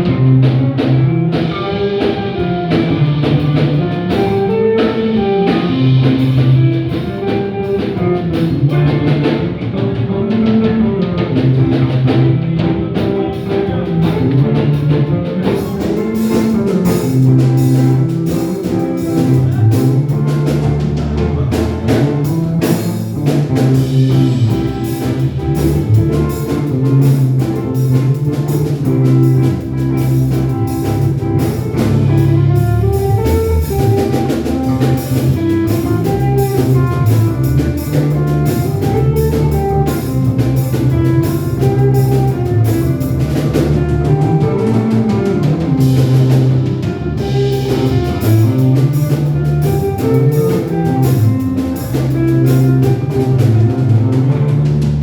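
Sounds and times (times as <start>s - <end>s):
bass line: 0.0s - 55.0s
drum kit: 0.0s - 55.0s
guitar: 0.0s - 55.0s
cymbals: 15.4s - 54.2s.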